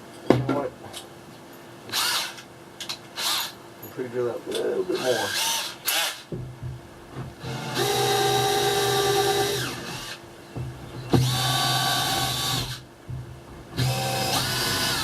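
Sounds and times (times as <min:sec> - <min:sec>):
electric drill boring into wood: 0:01.9 - 0:02.4, 0:03.2 - 0:03.5, 0:05.0 - 0:06.3, 0:07.4 - 0:10.2, 0:11.2 - 0:12.8, 0:13.8 - 0:15.0.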